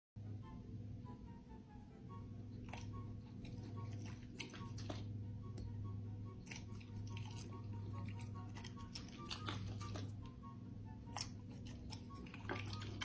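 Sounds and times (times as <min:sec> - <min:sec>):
dog chewing fruit: 0:02.6 - 0:05.2, 0:06.4 - 0:10.4, 0:11.0 - 0:13.0.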